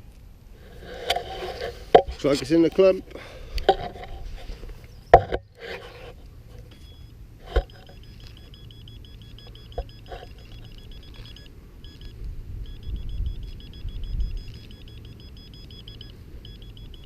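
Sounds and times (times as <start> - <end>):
metal detector beeping: 3.8 - 5.6, 6.6 - 17.0.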